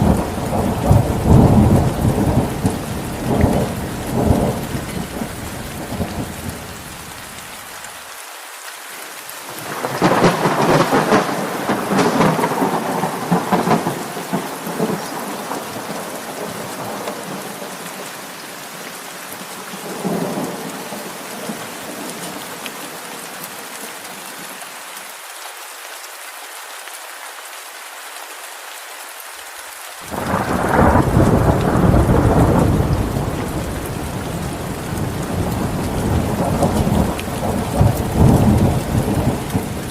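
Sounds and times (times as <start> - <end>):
thunder rumbling: 0.0 - 6.9, 9.6 - 17.6, 30.1 - 39.9
steady rain: 0.0 - 39.9.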